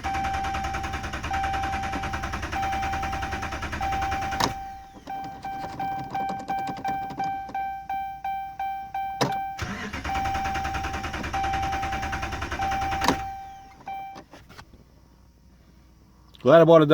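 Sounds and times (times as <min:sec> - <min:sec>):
engine cranking on starter: 0:00.0 - 0:07.2, 0:09.5 - 0:14.0
dashboard warning chime: 0:00.0 - 0:14.3.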